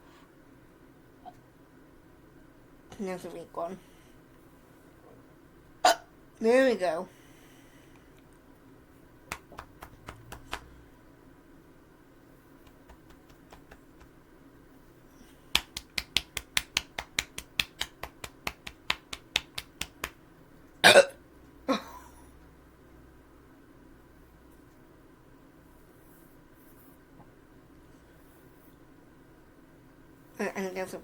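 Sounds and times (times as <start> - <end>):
burp: 20.8 - 21.2.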